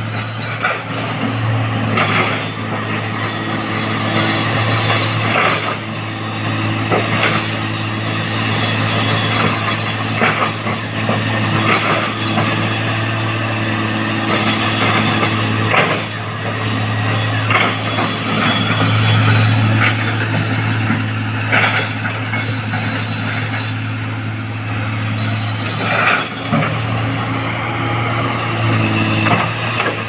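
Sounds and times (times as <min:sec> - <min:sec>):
diesel machinery engine running: 0:00.0 - 0:30.0
metallic clanks and knocks: 0:14.2 - 0:23.9, 0:25.2 - 0:27.0.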